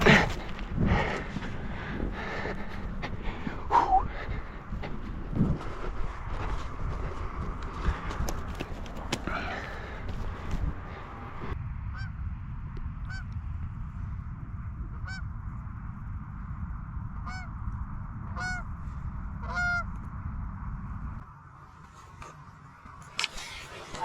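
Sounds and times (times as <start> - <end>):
low rumble: 0.0 - 21.7
geese honking: 18.4 - 18.7, 19.4 - 19.9.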